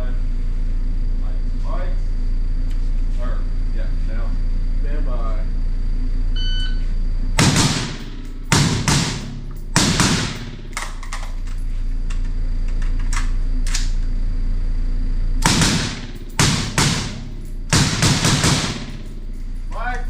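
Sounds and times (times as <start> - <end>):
low hum: 0.0 - 20.0
shot timer beep: 6.4 - 6.8
rifle shots indoors: 7.4 - 11.5, 15.4 - 19.4.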